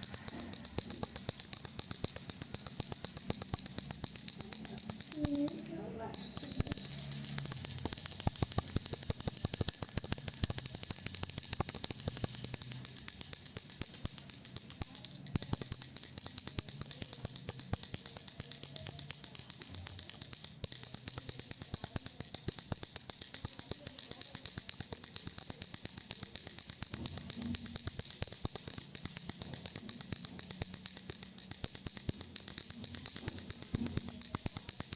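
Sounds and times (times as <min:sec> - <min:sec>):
hand bell ringing: 0:00.0 - 0:21.9.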